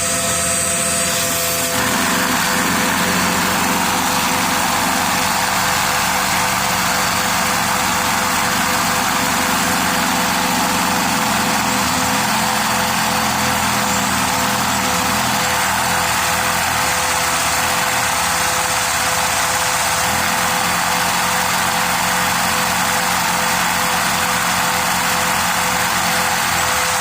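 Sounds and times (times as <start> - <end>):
small engine running: 0.0 - 27.0
vacuum cleaner running: 0.0 - 27.0.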